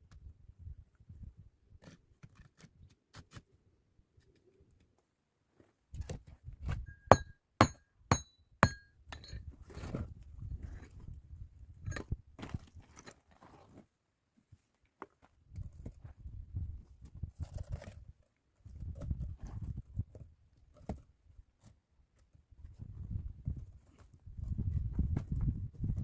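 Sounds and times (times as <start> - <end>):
hard objects clinking: 7.0 - 9.4.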